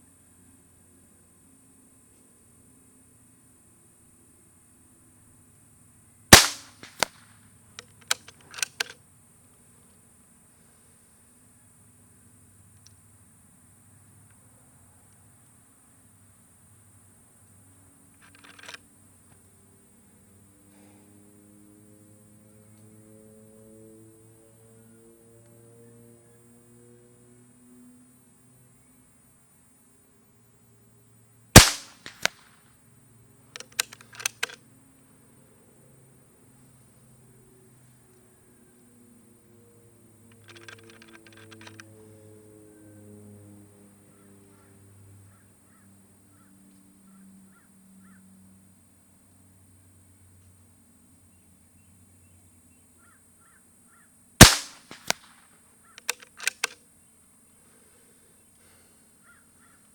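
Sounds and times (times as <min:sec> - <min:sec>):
air rifle shot: 0:06.4 - 0:07.3, 0:31.6 - 0:32.5, 0:54.4 - 0:55.4
sharp clicks: 0:06.4 - 0:09.0, 0:18.2 - 0:18.8, 0:31.6 - 0:32.5, 0:33.6 - 0:34.6, 0:40.3 - 0:41.9, 0:54.4 - 0:56.8.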